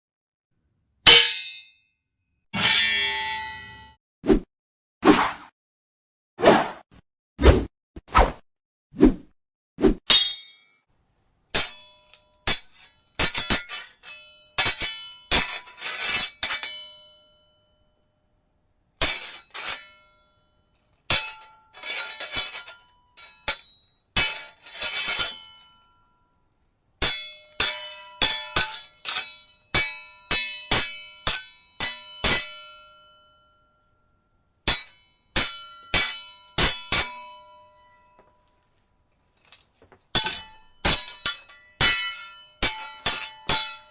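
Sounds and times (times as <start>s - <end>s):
sword blades clashing: 1.1s - 1.8s, 2.6s - 3.9s, 10.0s - 10.8s, 11.5s - 17.2s, 19.0s - 20.1s, 21.1s - 25.7s, 27.0s - 33.0s, 34.7s - 38.0s, 40.1s - 43.9s.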